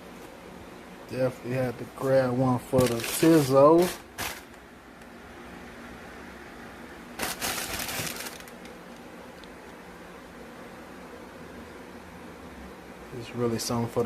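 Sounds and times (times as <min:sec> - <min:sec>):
steady low hiss: 0:00.0 - 0:14.0
packaging rustling: 0:02.6 - 0:04.6, 0:07.2 - 0:08.8.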